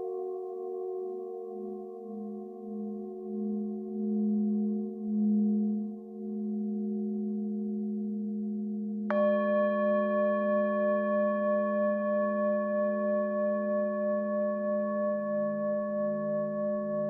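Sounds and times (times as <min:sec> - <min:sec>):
singing bowls ringing: 0:09.1 - 0:17.0.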